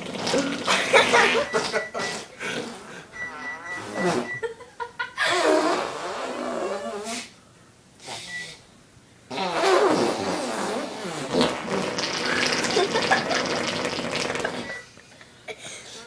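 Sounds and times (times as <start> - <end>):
person making fake fart noises: 0.0 - 4.4, 5.2 - 7.4, 9.3 - 14.8.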